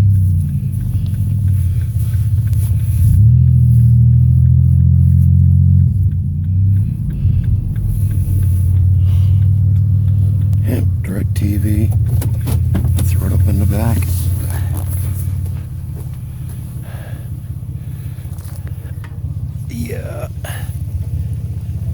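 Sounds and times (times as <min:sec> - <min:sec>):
vehicle engine rumbling: 0:00.0 - 0:21.9.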